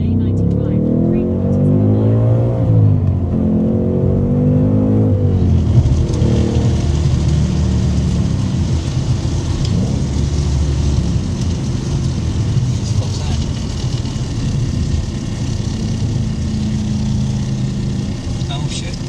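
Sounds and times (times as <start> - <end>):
car engine revving: 0.0 - 19.0
harsh flapping under car: 5.0 - 19.0.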